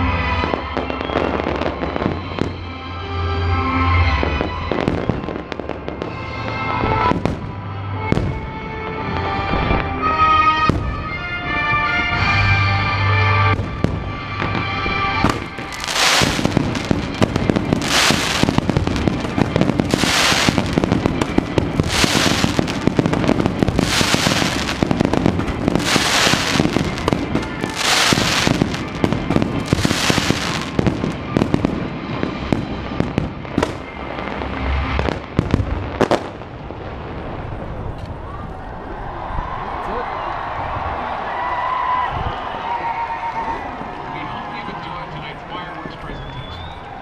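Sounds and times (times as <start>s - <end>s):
fireworks bangs and crackling: 0.0s - 2.8s, 4.1s - 12.3s, 13.4s - 38.6s.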